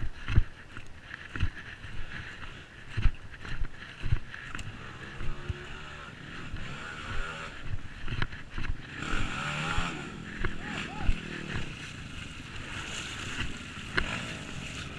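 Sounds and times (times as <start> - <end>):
motorcycle engine running: 0.0 - 14.9.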